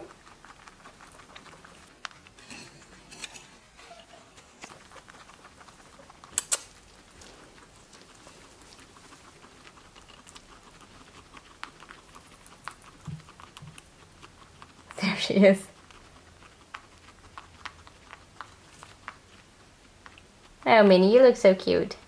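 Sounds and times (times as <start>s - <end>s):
faint crackles and ticks: 0.0s - 22.0s
sharp clicks: 6.3s - 6.8s.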